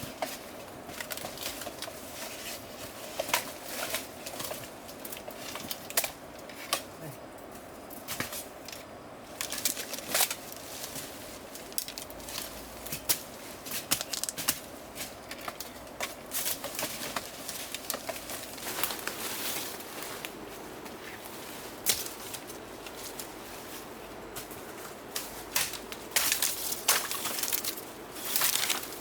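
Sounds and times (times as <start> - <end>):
rustling: 9.4 - 29.0.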